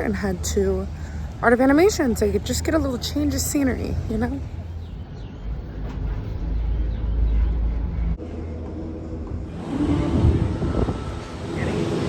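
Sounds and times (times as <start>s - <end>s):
wind buffeting microphone: 9.0s - 12.0s.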